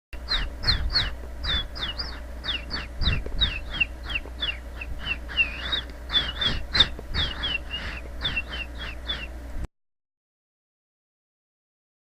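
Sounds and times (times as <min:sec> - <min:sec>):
bird chirping: 0:00.2 - 0:09.4
low steady hum: 0:00.2 - 0:09.7.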